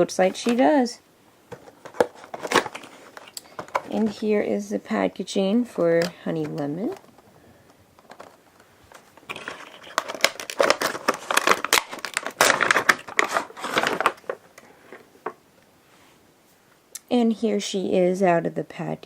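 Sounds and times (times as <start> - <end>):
faint handling sounds: 0.0 - 16.9
packaging crinkling and crackling: 1.5 - 4.4, 5.9 - 15.4.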